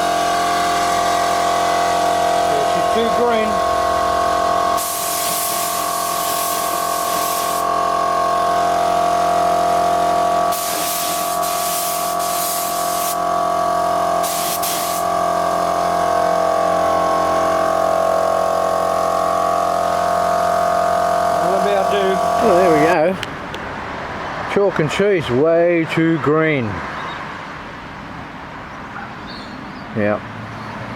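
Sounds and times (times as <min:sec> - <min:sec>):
steady motor hum: 0:00.0 - 0:23.5
spray gun hissing: 0:04.8 - 0:08.1, 0:10.5 - 0:13.4, 0:14.1 - 0:15.4.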